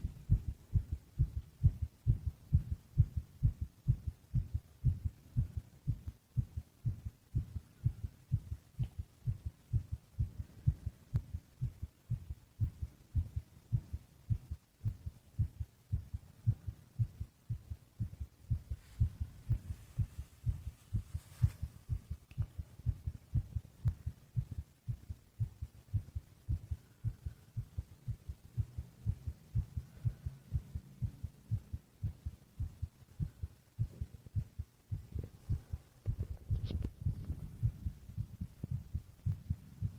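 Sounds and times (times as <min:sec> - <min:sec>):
heartbeat thumps: 0:00.0 - 0:39.9.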